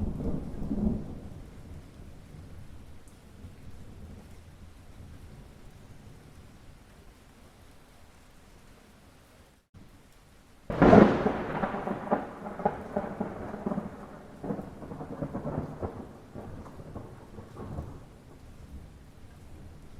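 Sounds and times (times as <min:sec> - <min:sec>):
steady rain: 0:00.0 - 0:19.9
thunderclap: 0:10.7 - 0:18.4.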